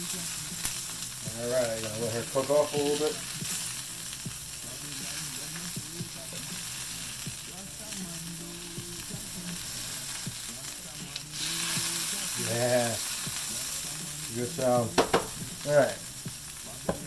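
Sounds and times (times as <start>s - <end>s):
fish searing in a hot pan: 0.0s - 17.0s
small oil pops: 15.0s - 15.4s.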